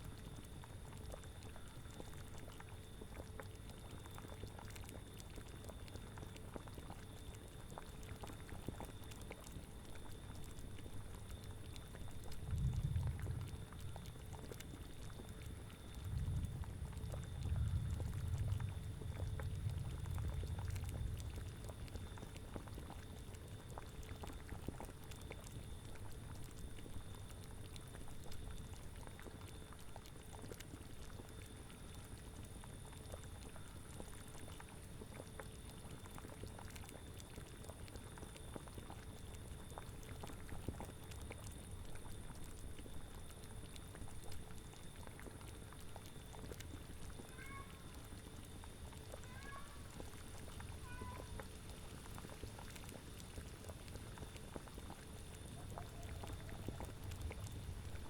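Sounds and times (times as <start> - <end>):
liquid boiling with bubbling pops: 0.0 - 58.0
low wind rumble: 12.4 - 14.1, 15.9 - 22.6, 56.6 - 58.0.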